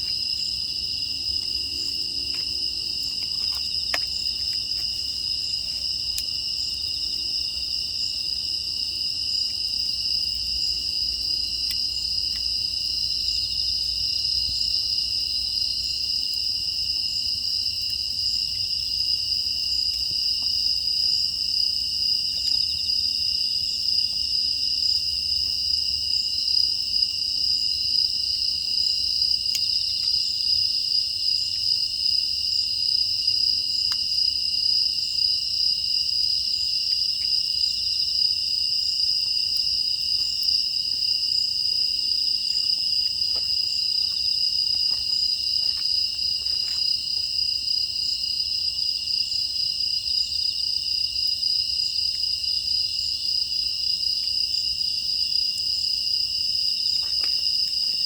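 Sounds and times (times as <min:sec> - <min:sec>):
crickets chirping: 0:00.0 - 0:58.0.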